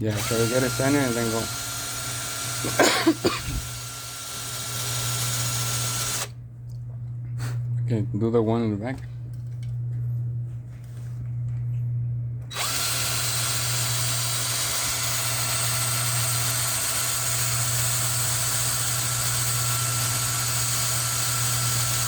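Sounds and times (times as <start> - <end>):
electric drill drilling rivet: 0.0 - 6.4, 12.5 - 22.0
low hum: 5.4 - 12.7.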